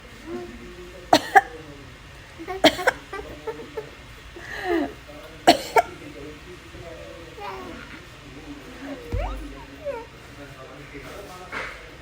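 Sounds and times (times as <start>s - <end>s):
woman coughing: 1.1s - 1.6s, 2.6s - 3.3s, 5.5s - 5.9s.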